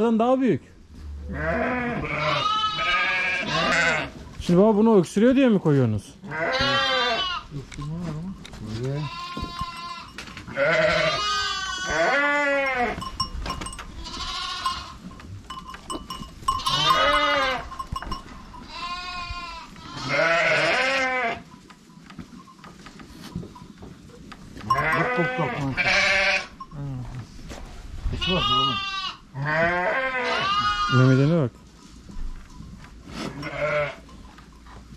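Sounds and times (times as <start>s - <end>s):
sheep bleating: 1.2s - 4.2s, 6.2s - 7.5s, 8.9s - 13.2s, 13.9s - 15.0s, 16.5s - 17.8s, 18.6s - 21.5s, 24.6s - 26.6s, 28.1s - 31.3s, 33.2s - 34.0s.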